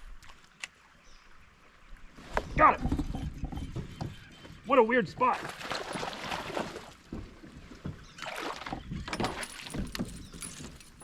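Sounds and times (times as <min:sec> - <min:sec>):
water splashing: 0:05.0 - 0:11.0.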